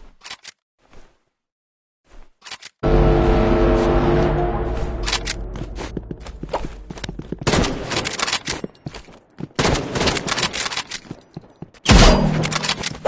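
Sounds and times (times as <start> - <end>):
loud low bang: 2.8 - 7.0.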